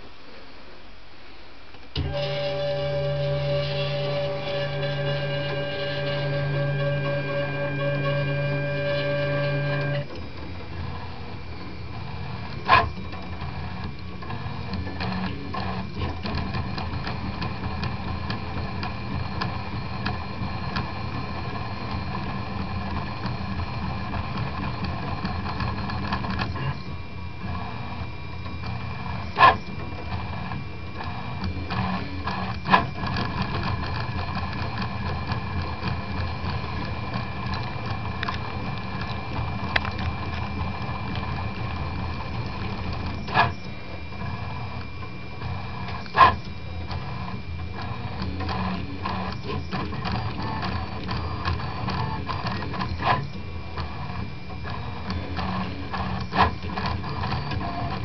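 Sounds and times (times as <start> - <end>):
steady pitched hum: 0.0 - 58.0
stepper motors whirring: 2.0 - 10.2.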